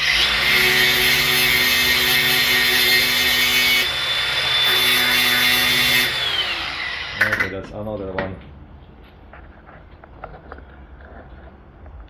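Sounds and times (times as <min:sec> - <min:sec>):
power tool cutting metal: 0:00.0 - 0:07.5.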